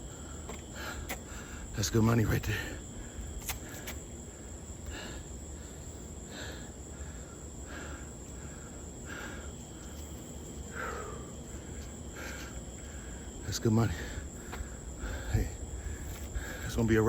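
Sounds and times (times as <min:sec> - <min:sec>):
crickets trilling: 0:00.0 - 0:17.0.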